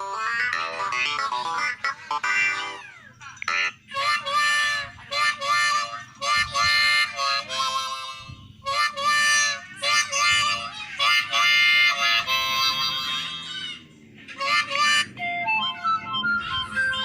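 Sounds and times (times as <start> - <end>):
phone ringtone melody: 0.0 - 8.2, 14.6 - 17.0.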